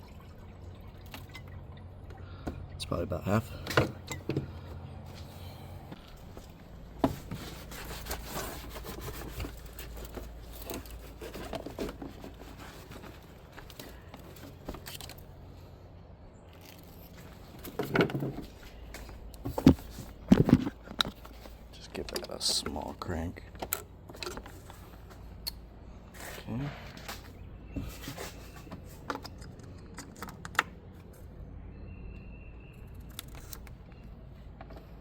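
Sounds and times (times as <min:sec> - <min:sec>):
faint scrapes and rustles: 0:04.5 - 0:15.6, 0:26.1 - 0:30.3.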